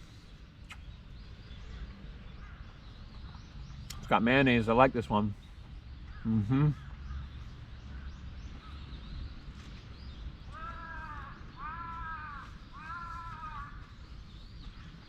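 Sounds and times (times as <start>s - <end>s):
crow cawing: 10.5s - 14.0s.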